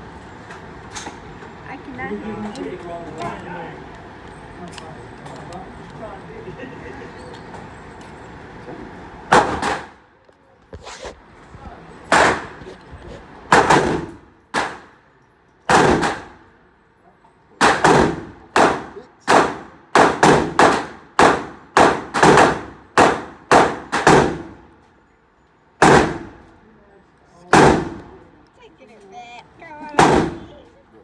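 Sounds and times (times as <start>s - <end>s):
gunshots echoing indoors: 9.3s - 10.0s, 13.5s - 15.0s, 15.7s - 16.5s, 17.6s - 24.6s, 25.8s - 26.5s, 27.5s - 28.1s, 30.0s - 30.5s.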